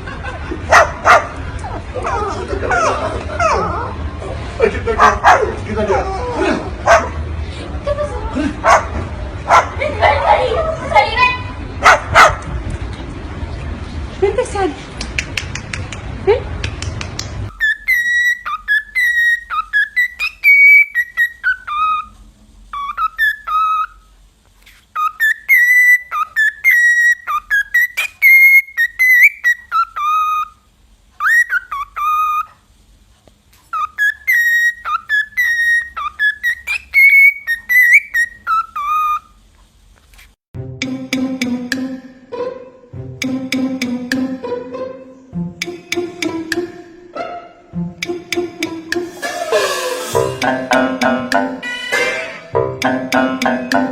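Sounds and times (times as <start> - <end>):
parrot whistling a tune: 17.5 - 24.1, 24.9 - 32.6, 33.7 - 39.4.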